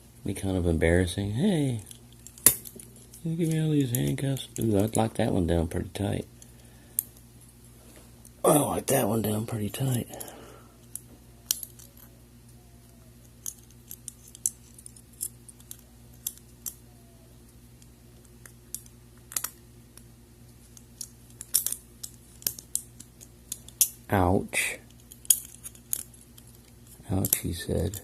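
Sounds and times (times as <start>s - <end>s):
faint steady hum: 0.0s - 28.0s
handcuff ratchet clicking: 21.0s - 24.0s.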